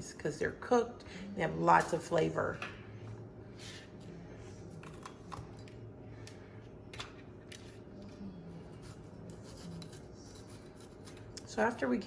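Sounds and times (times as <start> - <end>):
low steady hum: 0.0 - 12.0
knife cutting peppers: 8.8 - 11.9.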